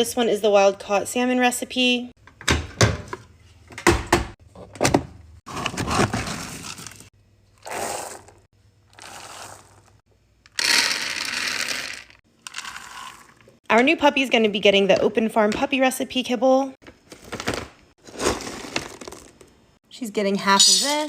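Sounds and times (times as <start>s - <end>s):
dry kibble pouring into bowls: 8.9s - 9.9s, 10.6s - 13.3s.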